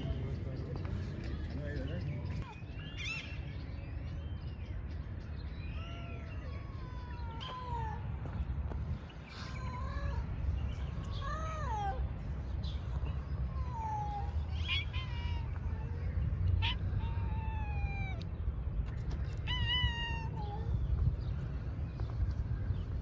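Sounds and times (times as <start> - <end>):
cat meowing: 13.5 - 18.2, 19.3 - 20.7.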